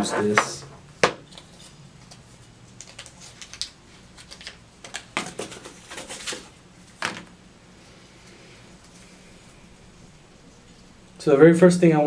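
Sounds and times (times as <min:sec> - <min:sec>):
packaging clicking and crinkling: 0:02.8 - 0:06.5.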